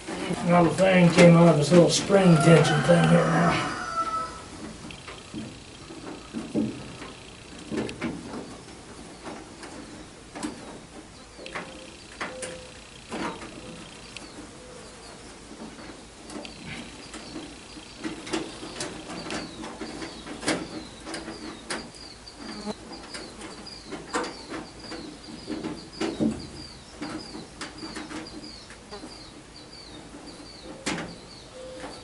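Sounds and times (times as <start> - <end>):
small bird chirping: 9.9 - 15.3, 16.4 - 32.0.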